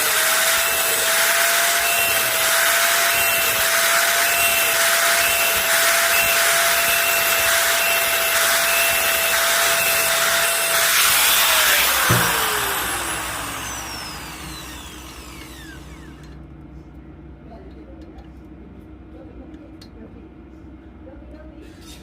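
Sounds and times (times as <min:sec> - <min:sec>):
electric grinder whining: 0:00.0 - 0:16.4.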